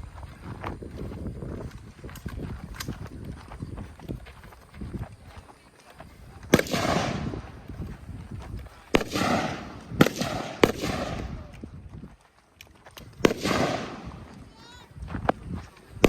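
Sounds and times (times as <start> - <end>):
gunshots with echo: 6.5 - 7.6, 8.9 - 11.5, 13.2 - 14.3.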